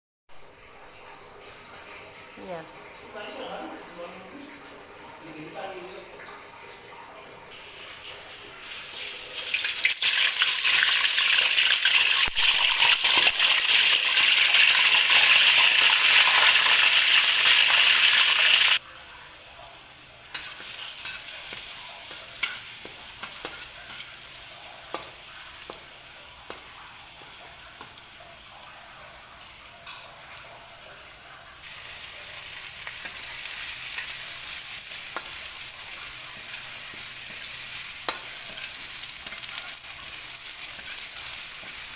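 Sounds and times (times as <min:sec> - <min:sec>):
food sizzling in hot oil: 0:07.6 - 0:18.8, 0:19.4 - 0:30.5, 0:31.6 - 0:41.9.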